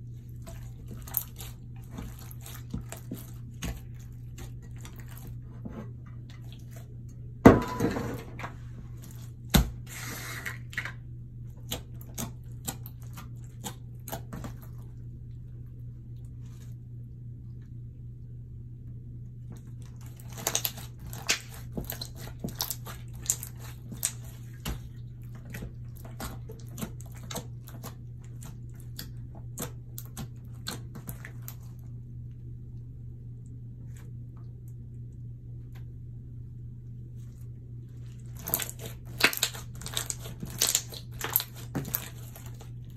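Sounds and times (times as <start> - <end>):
slime squishing by hand: 0.0 - 7.8, 8.5 - 15.2, 19.4 - 32.3, 37.0 - 42.9
steady low hum: 0.0 - 42.9.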